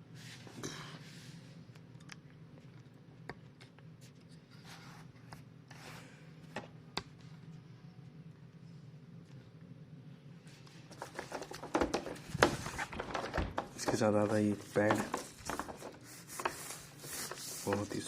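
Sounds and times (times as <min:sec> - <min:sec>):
rustling on a desk: 0:10.5 - 0:18.0.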